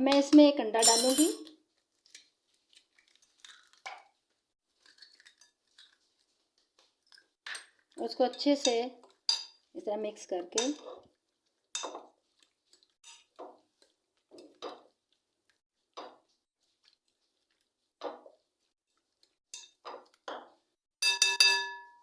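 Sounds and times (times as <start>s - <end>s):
ringing clink: 0.8s - 1.4s
spoon scraping and clinking bowl: 0.8s - 1.4s.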